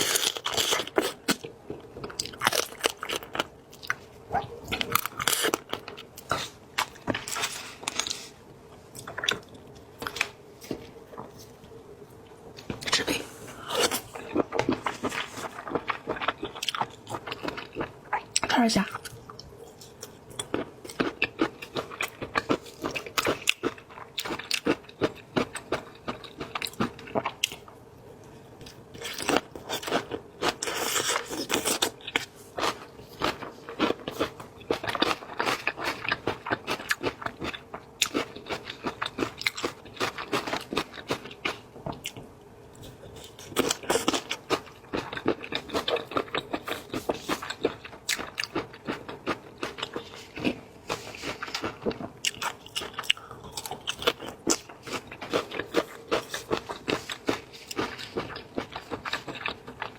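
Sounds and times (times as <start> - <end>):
person chewing crunchy shrimp: 0.0 - 11.6, 12.2 - 27.8, 28.6 - 59.9.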